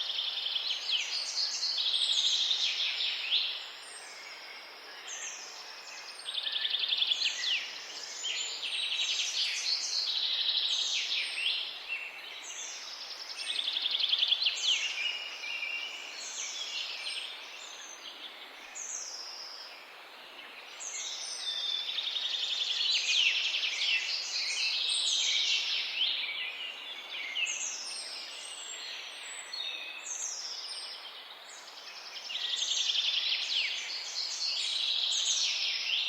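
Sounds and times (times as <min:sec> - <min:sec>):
faint background hiss: 0:00.0 - 0:36.0.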